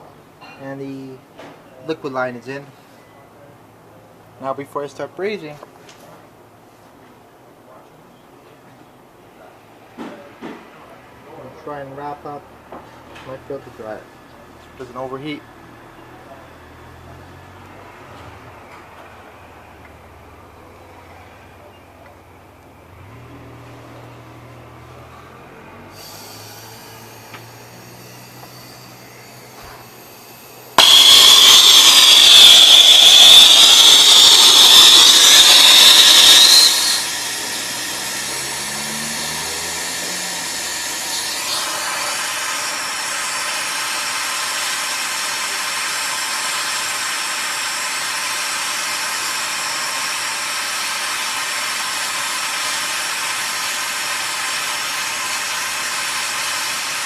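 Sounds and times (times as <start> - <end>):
brazing torch hissing: 25.9 - 57.0.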